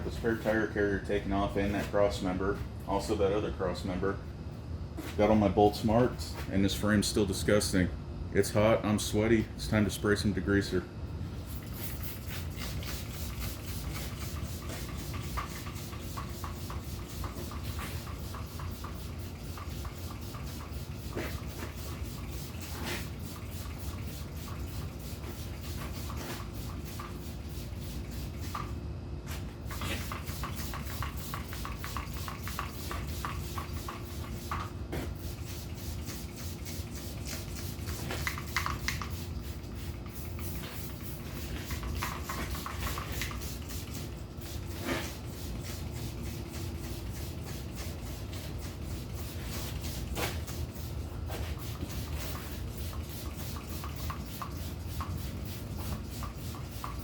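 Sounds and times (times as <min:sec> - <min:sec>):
spray hissing: 0:11.8 - 0:28.7, 0:29.7 - 0:57.0.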